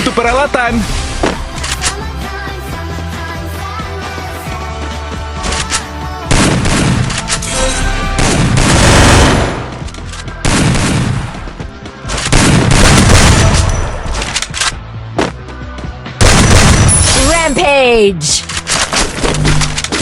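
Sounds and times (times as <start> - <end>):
pop song: 1.2 - 6.6.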